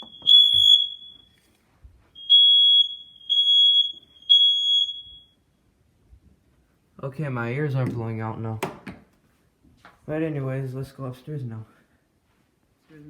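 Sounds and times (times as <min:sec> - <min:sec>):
smoke alarm beeping: 0:00.0 - 0:01.5, 0:02.1 - 0:05.5.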